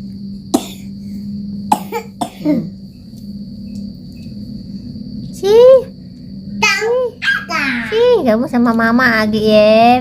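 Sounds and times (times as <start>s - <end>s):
boy coughing: 0.5s - 0.8s, 1.7s - 2.7s.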